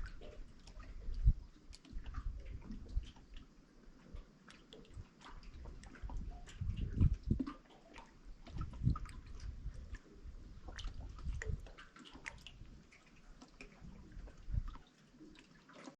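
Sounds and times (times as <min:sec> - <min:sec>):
water lapping and dripping: 0:00.0 - 0:15.9
low rumble: 0:05.7 - 0:07.5.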